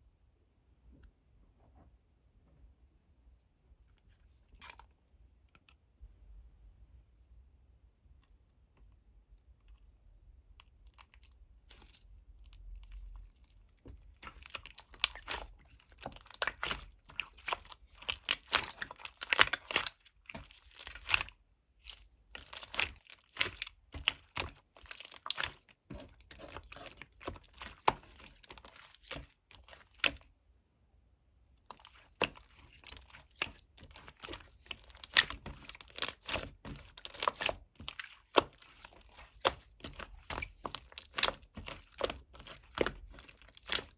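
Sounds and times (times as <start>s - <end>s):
crunchy crackling and crinkling: 10.6s - 30.3s, 31.7s - 43.9s.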